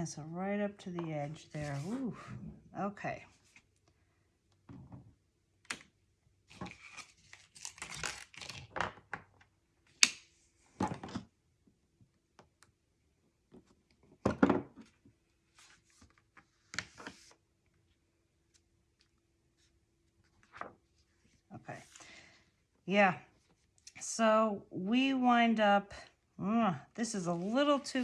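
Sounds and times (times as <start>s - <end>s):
paper rustling and crinkling: 6.5s - 8.8s, 15.5s - 17.4s, 19.6s - 22.0s.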